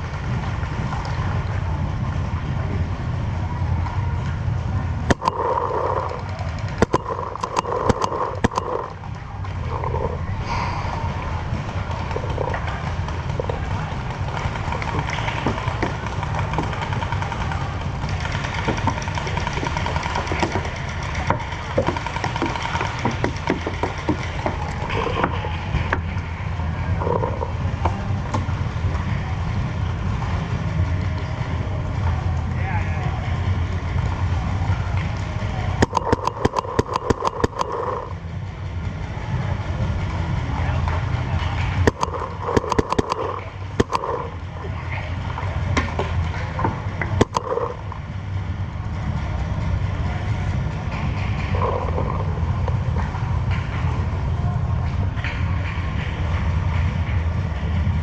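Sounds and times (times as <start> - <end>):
steady low rumble: 0.0 - 58.0
paintball markers firing pops: 6.8 - 8.9, 35.8 - 38.0, 41.9 - 44.3, 47.2 - 47.7.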